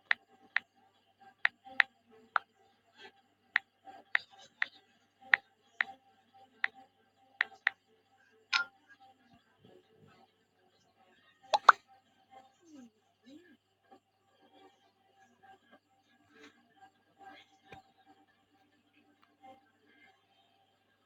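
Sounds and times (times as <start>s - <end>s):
sharp clicks or taps: 11.6s - 11.8s.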